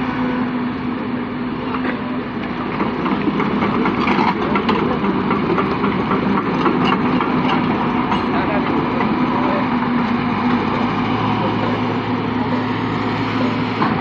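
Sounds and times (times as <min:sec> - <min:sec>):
heavy diesel machinery running: 0:00.0 - 0:14.0
clattering and knocking: 0:02.7 - 0:09.2.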